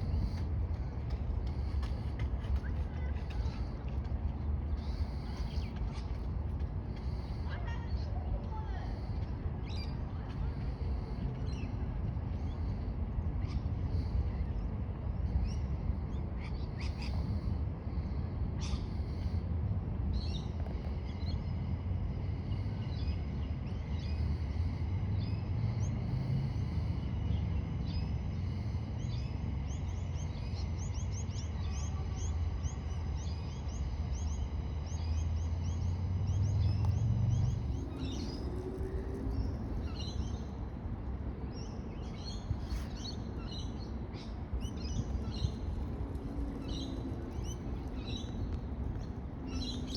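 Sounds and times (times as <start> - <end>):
steady low rumble: 0.0 - 49.9
birds chirping: 27.9 - 49.9.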